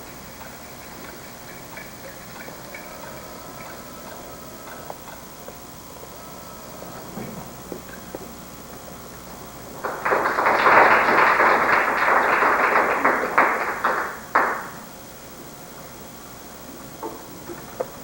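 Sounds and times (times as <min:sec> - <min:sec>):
audience applauding: 0:01.1 - 0:05.3, 0:09.7 - 0:14.9.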